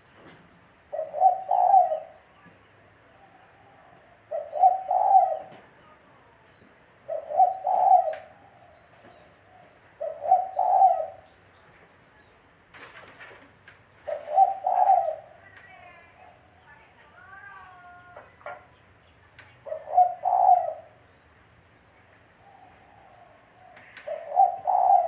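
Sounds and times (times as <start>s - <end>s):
dove cooing: 0.9s - 2.3s, 3.1s - 5.8s, 7.0s - 11.4s, 14.0s - 16.7s, 19.5s - 21.1s, 22.3s - 25.0s.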